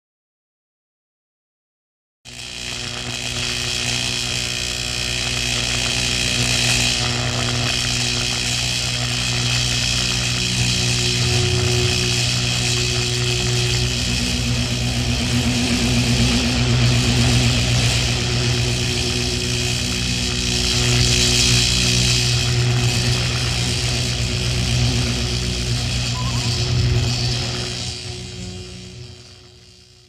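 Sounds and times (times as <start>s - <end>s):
electrical sparks crackling: 2.4s - 30.0s
low electric hum: 2.7s - 30.0s.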